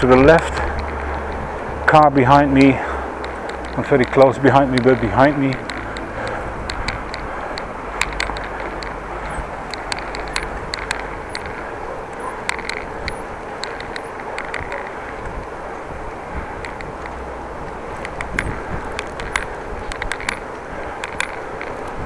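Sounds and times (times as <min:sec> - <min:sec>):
bicycle tyre noise: 0:00.0 - 0:22.0
light ticks: 0:00.0 - 0:22.0
wind rushing over microphone: 0:00.0 - 0:22.0.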